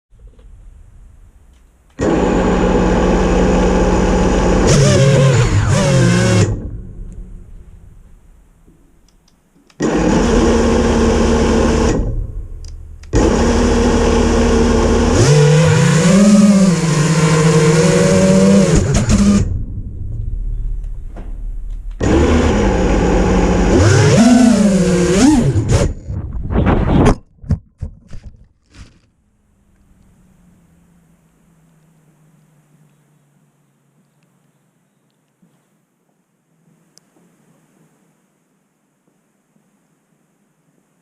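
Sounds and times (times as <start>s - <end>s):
quadcopter motors whining: 2.0s - 6.8s, 9.8s - 12.2s, 13.0s - 19.5s, 22.0s - 26.2s.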